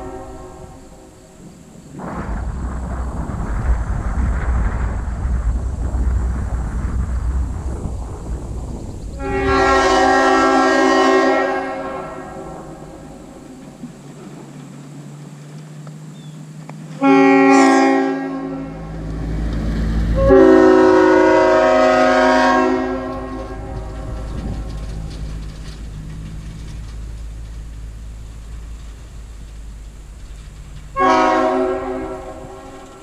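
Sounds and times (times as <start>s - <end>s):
air horn blasts: 0.0s - 1.3s, 9.2s - 13.6s, 17.0s - 19.0s, 20.1s - 24.9s, 30.9s - 33.0s
steady low rumble: 0.0s - 17.1s, 18.3s - 33.0s.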